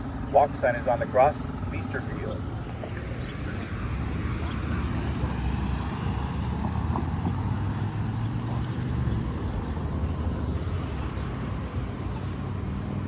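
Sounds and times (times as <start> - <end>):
rumble of road traffic: 0.0 - 13.0
crosswalk button ticking: 2.7 - 13.0.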